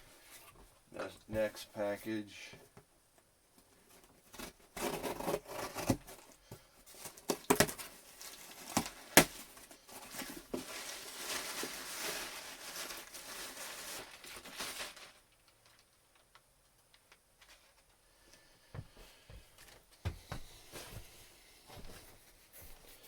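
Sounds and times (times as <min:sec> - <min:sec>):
wrapping rustling: 0:03.8 - 0:16.4
package wrapping tearing: 0:04.4 - 0:06.3, 0:07.0 - 0:15.8.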